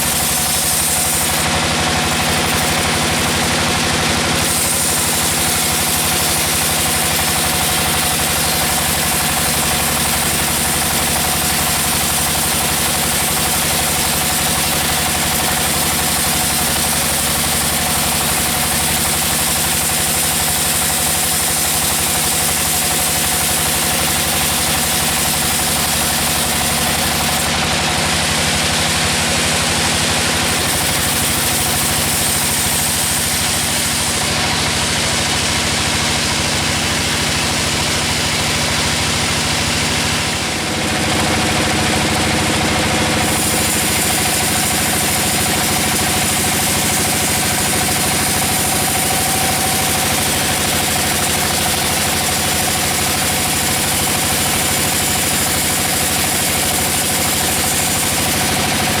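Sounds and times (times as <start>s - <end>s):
sawmill engine drone: 0.0s - 59.0s.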